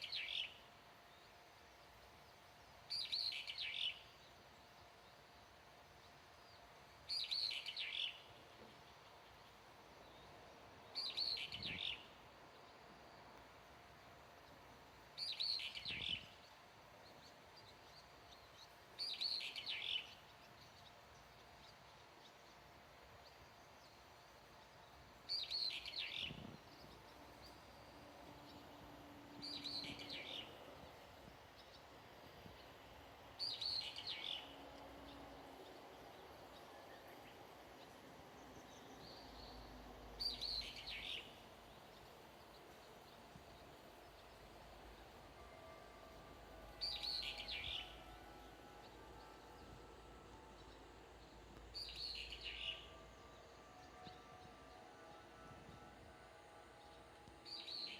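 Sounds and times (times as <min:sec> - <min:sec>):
songbird call: 0:24.8 - 0:32.8.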